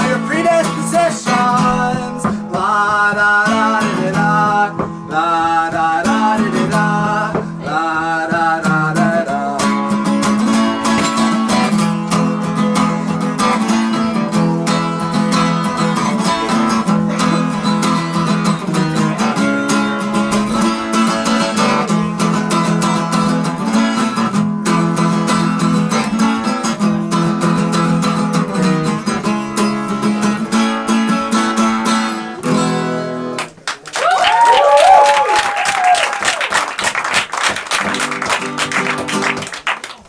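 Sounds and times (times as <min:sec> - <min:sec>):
acoustic guitar strumming: 0:00.0 - 0:33.6, 0:37.5 - 0:40.0
applause: 0:33.4 - 0:40.0
crowd cheering: 0:33.4 - 0:40.0.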